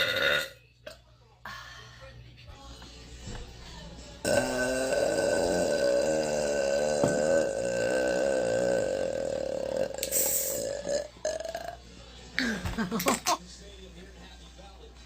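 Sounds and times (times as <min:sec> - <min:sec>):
woman burping: 0:00.0 - 0:00.6, 0:04.2 - 0:11.8.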